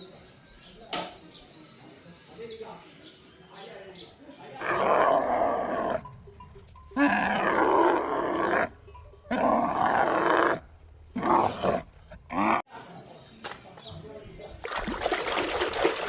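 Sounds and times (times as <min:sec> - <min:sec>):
animal roaring: 0:04.6 - 0:06.0, 0:07.0 - 0:12.6.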